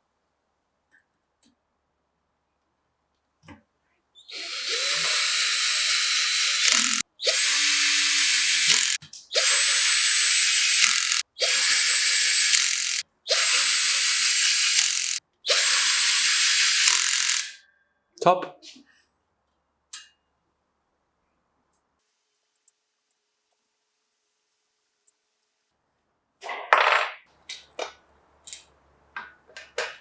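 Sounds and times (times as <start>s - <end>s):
loud hissing bursts: 4.4s - 17.5s.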